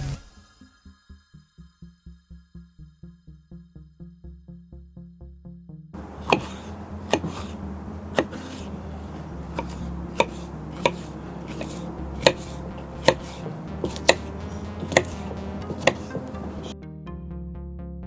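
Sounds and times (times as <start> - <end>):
knife chopping on cutting board: 6.0 - 16.7
steady low hum: 6.0 - 16.7.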